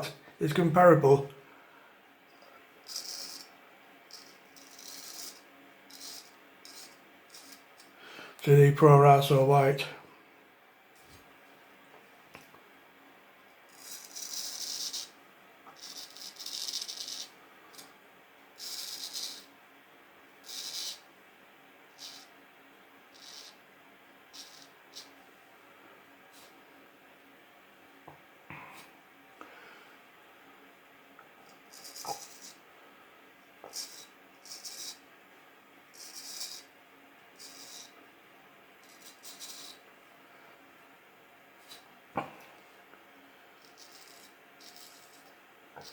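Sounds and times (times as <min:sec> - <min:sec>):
razor scraping stubble: 0:43.6 - 0:45.9.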